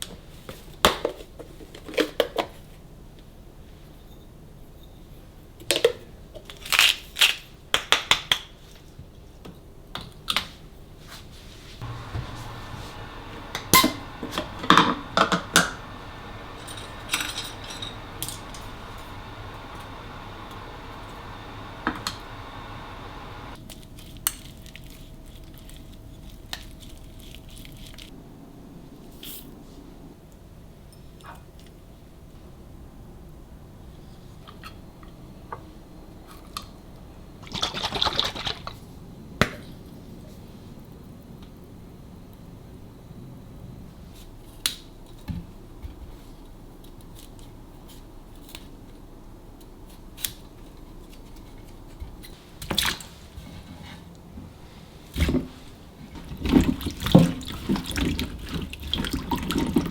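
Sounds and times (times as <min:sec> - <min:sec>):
dishes and utensils clinking: 0:11.8 - 0:23.5.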